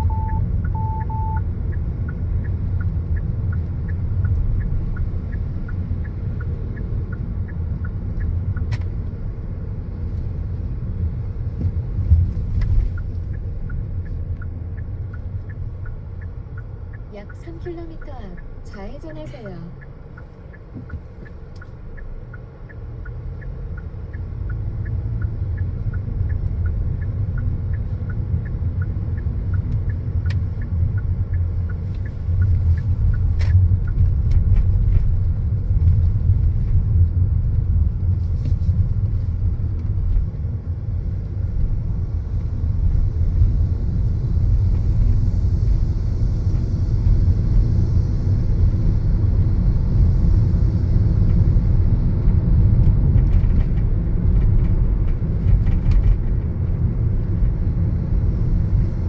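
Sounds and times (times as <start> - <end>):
car tyres and engine rumble: 0.0 - 59.0
faint regular ticking: 0.2 - 10.3, 11.4 - 35.0.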